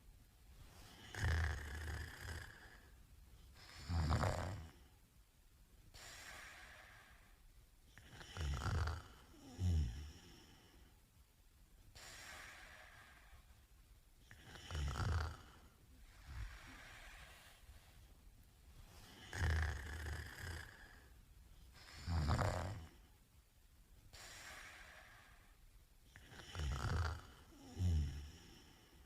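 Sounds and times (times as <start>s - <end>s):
soft breaths: 0.0s - 29.0s
man snoring: 0.9s - 2.9s, 3.7s - 4.8s, 8.0s - 10.7s, 14.3s - 15.7s, 19.1s - 21.1s, 21.9s - 23.0s, 26.2s - 29.0s.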